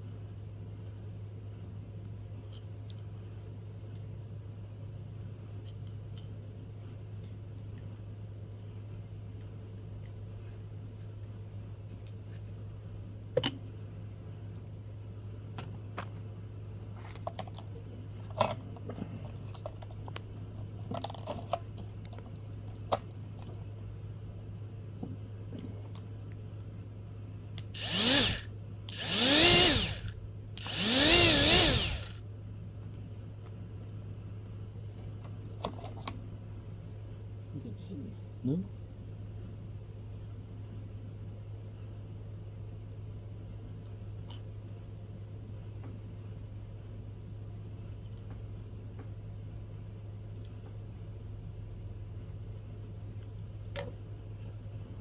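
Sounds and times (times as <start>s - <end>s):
grinder motor spinning up: 27.7s - 32.2s.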